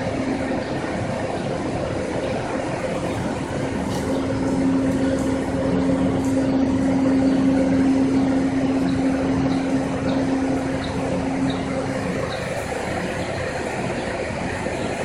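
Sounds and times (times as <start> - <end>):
machine engine humming: 0.0 - 15.0.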